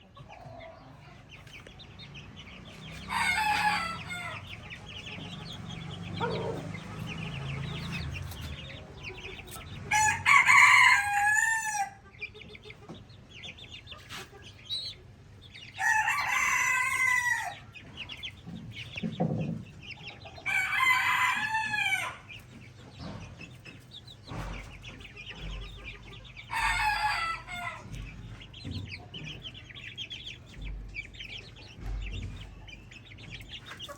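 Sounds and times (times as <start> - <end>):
chicks peeping and clucking: 0.0 - 33.9
rooster crowing: 3.0 - 4.5, 9.9 - 12.0, 15.8 - 17.6, 20.4 - 22.3, 26.5 - 27.9.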